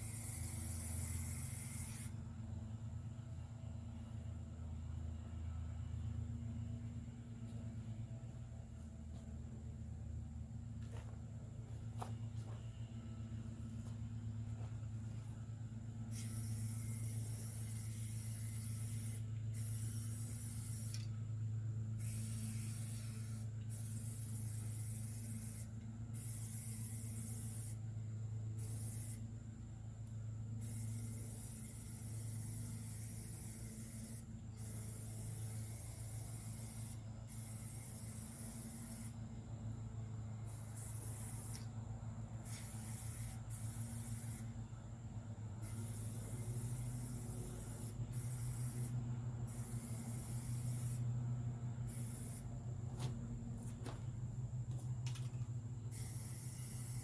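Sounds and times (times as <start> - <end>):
spray hissing: 0.0 - 2.2, 16.1 - 21.1, 22.0 - 27.8, 30.6 - 39.2, 40.5 - 41.7, 42.4 - 44.6, 45.6 - 51.1, 51.8 - 54.1, 55.9 - 57.0
steady low hum: 0.0 - 57.0.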